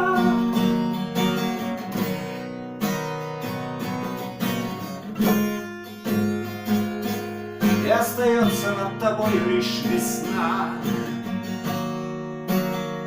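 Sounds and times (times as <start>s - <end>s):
acoustic guitar strumming chords: 0.0s - 13.0s.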